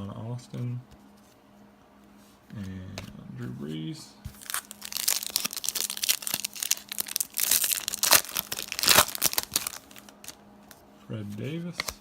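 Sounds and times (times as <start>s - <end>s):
card pack wrapper crinkling: 4.4s - 10.4s.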